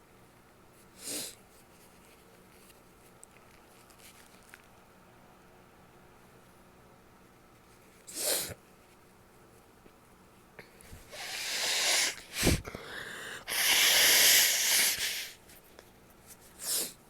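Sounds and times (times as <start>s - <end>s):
person sniffing: 0.9s - 1.4s, 8.1s - 8.6s, 11.0s - 15.4s, 16.6s - 17.0s
hissing blast of breath: 11.1s - 15.4s
person sneezing: 11.1s - 15.4s.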